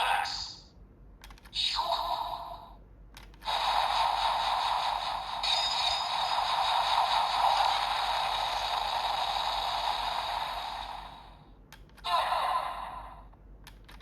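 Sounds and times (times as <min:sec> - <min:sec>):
electronic hissing rush: 0:03.5 - 0:11.3.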